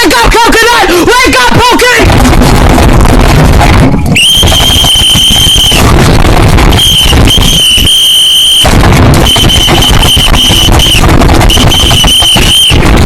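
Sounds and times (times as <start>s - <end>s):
harsh distorted noise: 0.0s - 13.0s
shrill high-pitched squeal: 4.2s - 6.0s, 6.6s - 13.0s.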